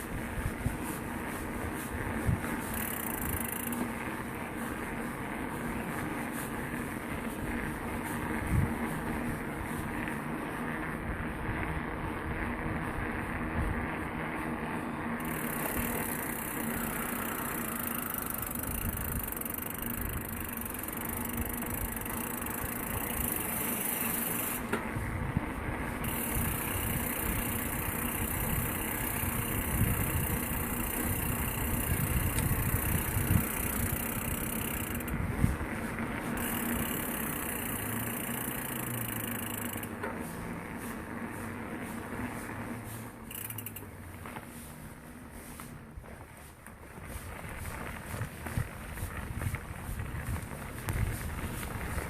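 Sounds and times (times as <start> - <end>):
bike tyres rumbling: 0.0 - 52.0
wind on microphone: 7.2 - 9.9, 24.9 - 36.0, 47.1 - 52.0.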